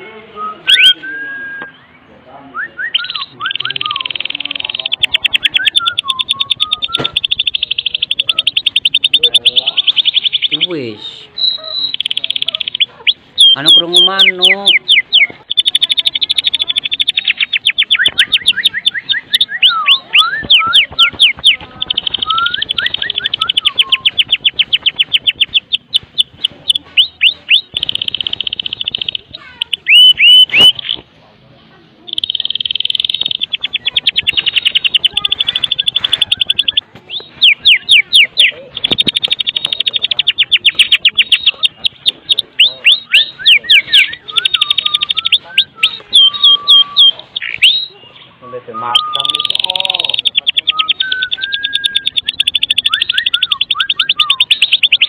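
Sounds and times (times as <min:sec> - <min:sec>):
swooping bird whistles: 0:00.4 - 0:02.0, 0:02.6 - 0:10.7, 0:11.4 - 0:31.0, 0:32.2 - 0:55.0
bird singing rattling song: 0:00.5 - 0:02.1, 0:02.7 - 0:31.2, 0:32.0 - 0:55.0.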